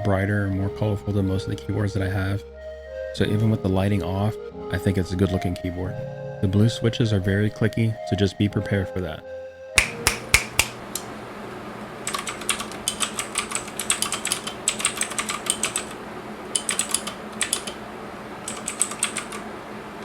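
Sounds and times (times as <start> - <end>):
mechanical keyboard typing: 12.1 - 17.8, 18.4 - 19.5.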